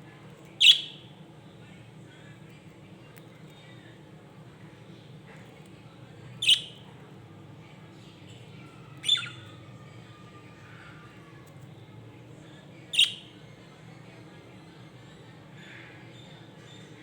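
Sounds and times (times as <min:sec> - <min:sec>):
budgerigar quiet chatter: 0:00.0 - 0:17.0
low background hum: 0:00.0 - 0:17.0
budgerigar sharp calls: 0:00.6 - 0:01.0.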